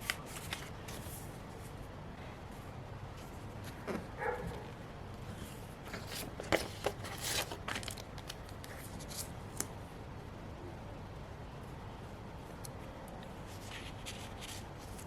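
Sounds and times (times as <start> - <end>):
paper rustling: 0.0 - 1.7, 5.8 - 9.3, 13.5 - 15.0.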